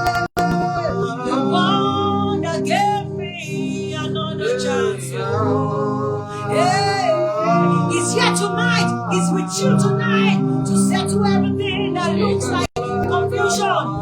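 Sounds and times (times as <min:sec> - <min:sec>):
sustained instrumental accompaniment: 0:00.0 - 0:14.0
solo voice singing ornamented melody: 0:06.3 - 0:14.0.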